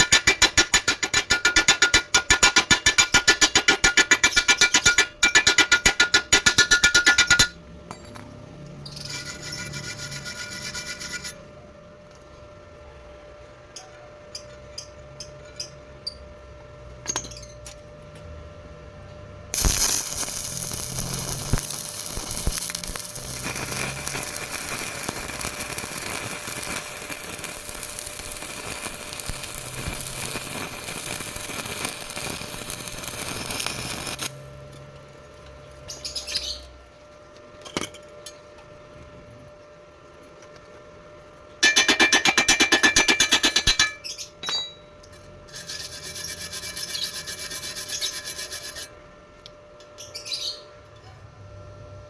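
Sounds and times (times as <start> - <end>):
welding arc crackling and hissing: 0.0 - 7.5, 19.6 - 34.6.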